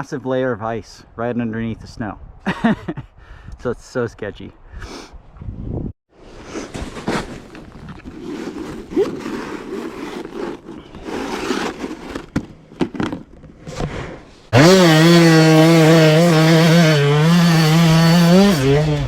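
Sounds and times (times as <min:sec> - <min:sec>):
two-stroke engine running loud: 0:14.6 - 0:19.0.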